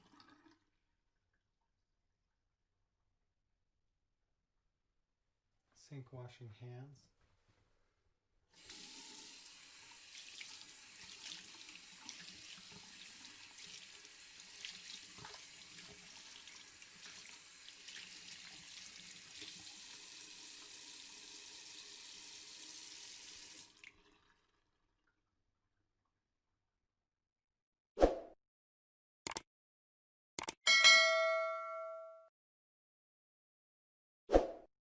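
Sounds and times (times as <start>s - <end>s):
tap water running: 0.0s - 0.8s, 8.6s - 25.2s.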